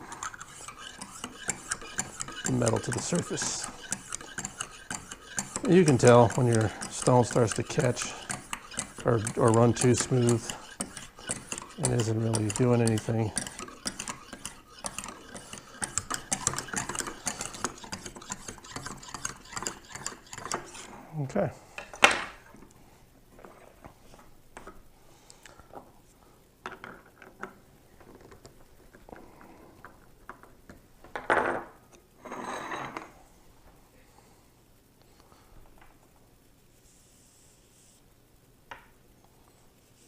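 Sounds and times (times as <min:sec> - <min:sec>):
honing stone scraping knife edge: 0:00.0 - 0:20.9.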